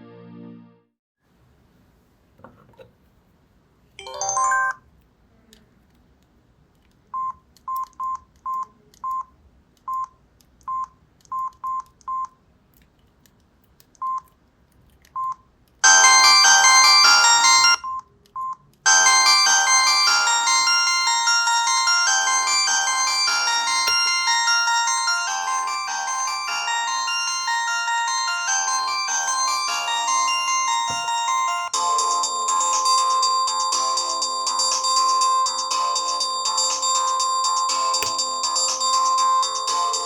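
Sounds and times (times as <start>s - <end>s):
musical ringtone: 4.0s - 4.8s, 15.8s - 17.8s, 18.9s - 40.0s
phone jingle: 4.0s - 4.8s, 15.8s - 17.8s, 18.9s - 33.7s
phone key beeps: 7.2s - 9.3s, 9.9s - 12.4s, 14.0s - 14.3s, 15.2s - 15.4s.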